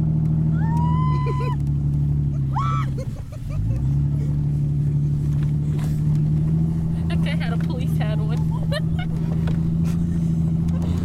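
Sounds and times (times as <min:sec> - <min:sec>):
engine running steadily: 0:00.0 - 0:11.0.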